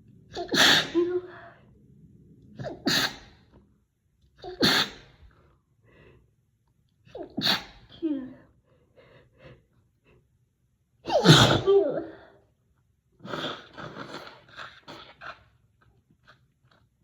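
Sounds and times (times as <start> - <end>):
woman sneezing: 0.4 - 1.4, 4.5 - 5.0, 7.4 - 7.8, 11.1 - 12.2.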